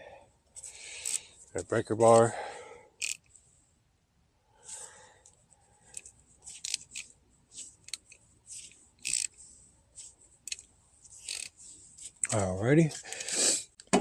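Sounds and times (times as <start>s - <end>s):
metal tool clicks and scrapes: 0.6s - 1.3s, 3.0s - 3.3s, 5.9s - 9.4s, 10.4s - 13.4s.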